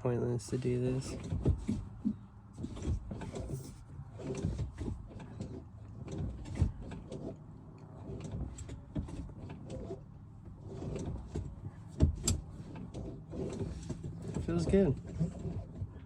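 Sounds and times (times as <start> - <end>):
gear shifter clicks and knocks: 0.6 - 16.0.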